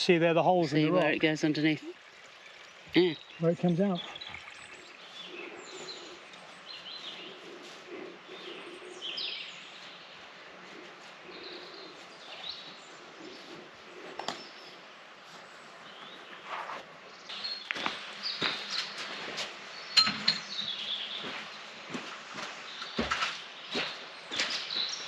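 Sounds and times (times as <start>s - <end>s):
running stream water: 0.0s - 15.9s
small birds chirping: 0.3s - 25.0s.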